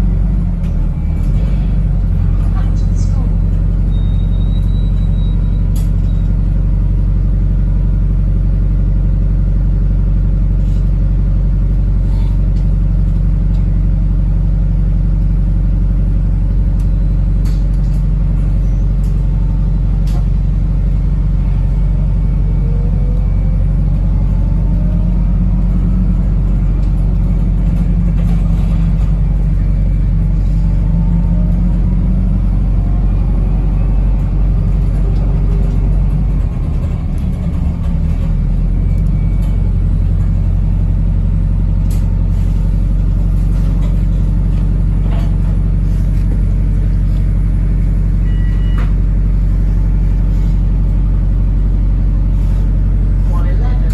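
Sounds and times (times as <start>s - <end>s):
bus drivetrain drone: 0.0s - 53.9s
rising bus engine whine: 0.0s - 53.9s
rattles and clicks: 23.8s - 31.8s, 32.5s - 40.4s.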